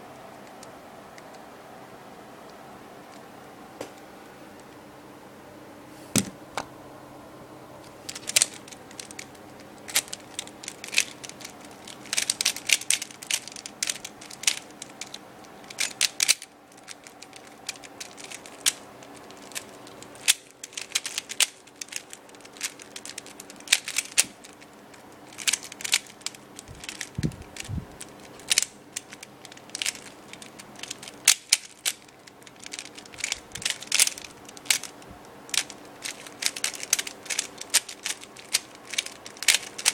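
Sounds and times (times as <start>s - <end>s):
puzzle cube plastic clicks: 8.1s - 39.9s.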